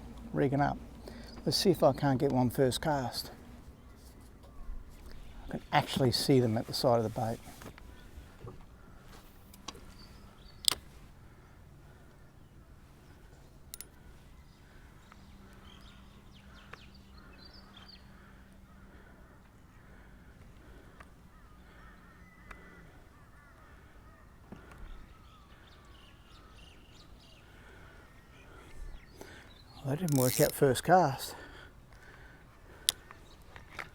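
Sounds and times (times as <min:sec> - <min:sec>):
birds calling faintly: 0:00.0 - 0:33.9
sharp click: 0:10.6 - 0:10.9, 0:30.0 - 0:30.6.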